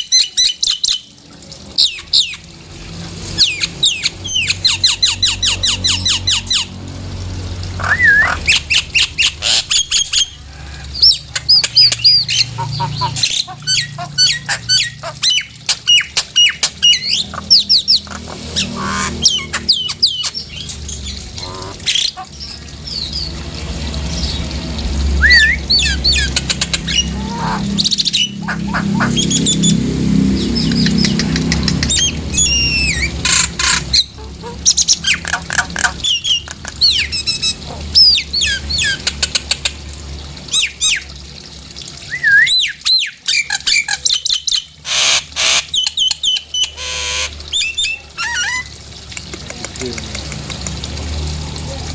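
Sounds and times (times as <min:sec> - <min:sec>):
myna whistling and squawking: 0:07.8 - 0:23.3, 0:25.2 - 0:29.8, 0:30.4 - 0:39.4, 0:42.1 - 0:48.8.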